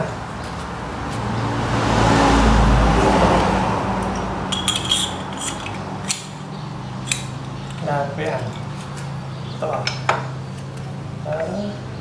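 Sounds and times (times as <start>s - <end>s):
socket wrench clicking and scraping: 4.0s - 9.0s.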